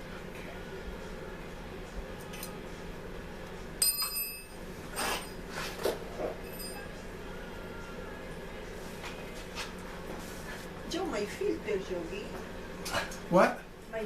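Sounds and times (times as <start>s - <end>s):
metal object ringing: 3.8s - 4.6s, 6.4s - 6.9s.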